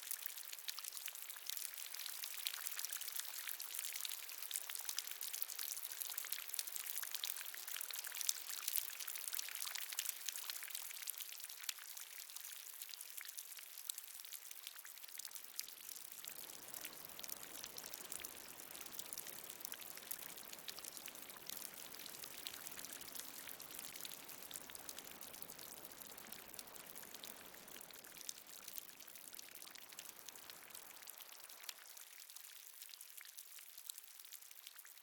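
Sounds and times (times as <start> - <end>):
water dripping: 15.5 - 34.8.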